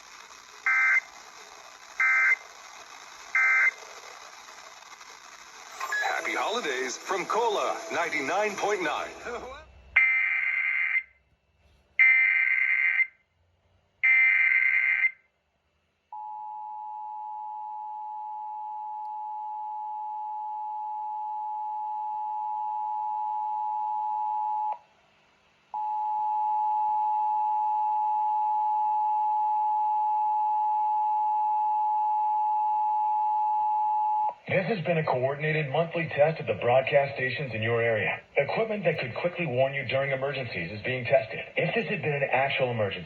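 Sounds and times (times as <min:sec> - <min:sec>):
digital data warble: 0:00.0 - 0:09.6
two-tone attention signal: 0:05.7 - 0:10.1.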